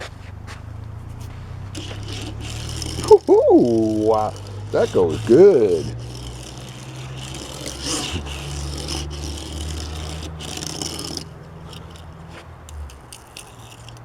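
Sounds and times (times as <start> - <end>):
toy car wheels rolling and scraping: 0.0 - 14.0.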